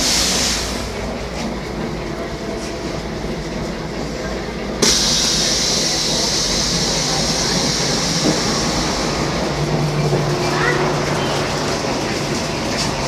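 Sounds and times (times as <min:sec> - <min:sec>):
loud air hiss: 0:00.0 - 0:01.0, 0:04.8 - 0:09.8
diesel bus low rumble: 0:00.0 - 0:13.0.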